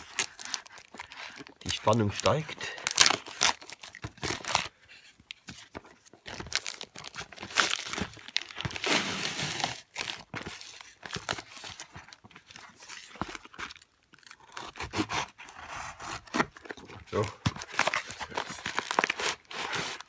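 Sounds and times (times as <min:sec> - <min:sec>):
packaging crinkling: 0:00.0 - 0:14.9, 0:16.5 - 0:20.0
tape and cardboard tearing: 0:06.5 - 0:11.2, 0:13.5 - 0:20.0.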